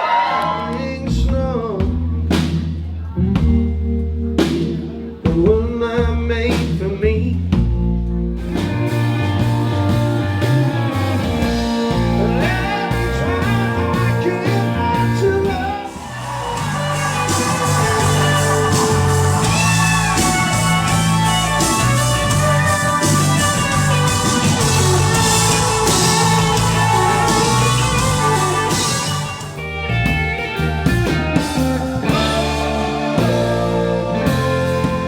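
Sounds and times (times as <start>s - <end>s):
live rock band playing: 1.2s - 35.0s
person singing: 11.7s - 29.6s, 30.6s - 35.0s.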